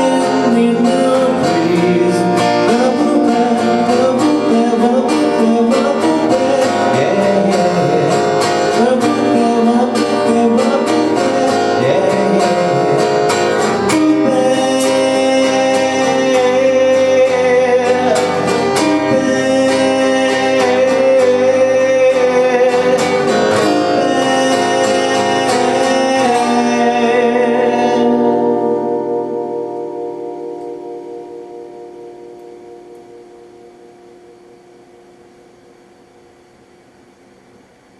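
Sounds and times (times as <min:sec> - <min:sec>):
person singing: 0:00.0 - 0:29.3
guitar: 0:00.0 - 0:37.9.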